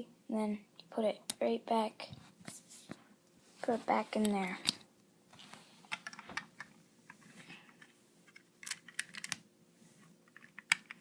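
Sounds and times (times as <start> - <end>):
plastic pieces clicking: 8.3 - 9.4.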